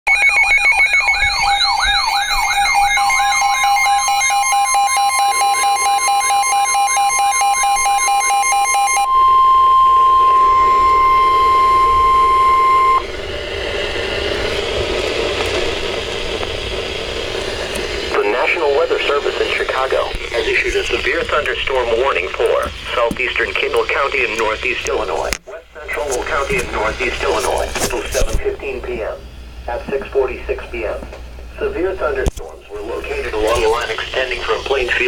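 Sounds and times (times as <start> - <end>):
fast-warbling electronic siren: 0.1 - 16.8
steady warning tone: 0.1 - 35.0.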